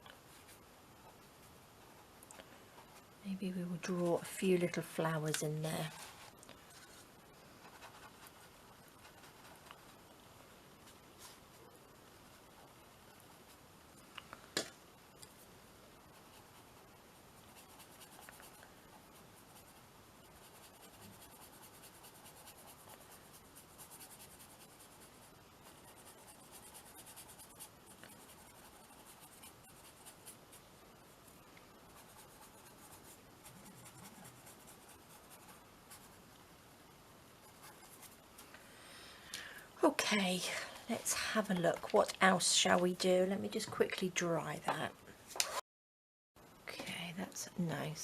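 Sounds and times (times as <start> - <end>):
pencil scratching on paper: 17.4 - 30.6, 31.9 - 36.2, 37.4 - 38.2.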